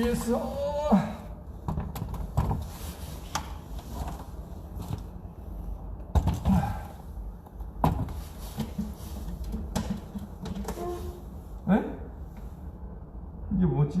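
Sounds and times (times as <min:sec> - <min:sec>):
knocks and thuds of handling: 0:01.6 - 0:05.1, 0:06.0 - 0:06.8, 0:07.6 - 0:11.2.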